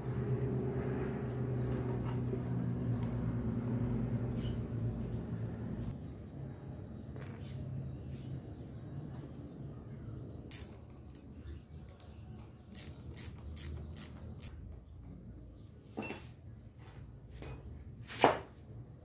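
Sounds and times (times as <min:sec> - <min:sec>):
ratchet wrench clicking: 0:10.5 - 0:11.3, 0:11.9 - 0:14.5.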